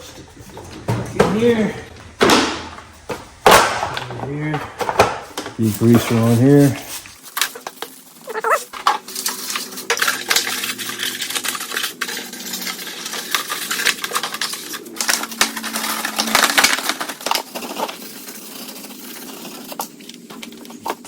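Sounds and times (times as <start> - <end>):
scrubbing and scraping: 5.5 - 21.0.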